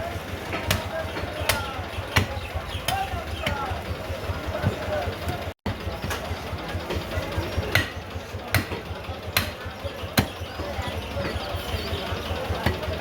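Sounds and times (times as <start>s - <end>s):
cleaver chopping meat: 0.6s - 3.7s, 7.7s - 10.4s.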